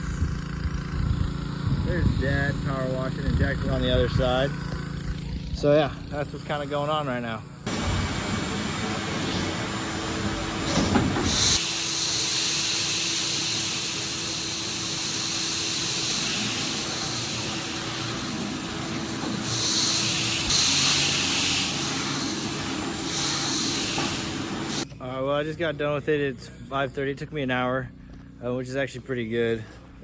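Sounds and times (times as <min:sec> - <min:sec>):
pressure washer motor hum: 0:07.7 - 0:24.8
pressure washer spraying: 0:07.7 - 0:24.8.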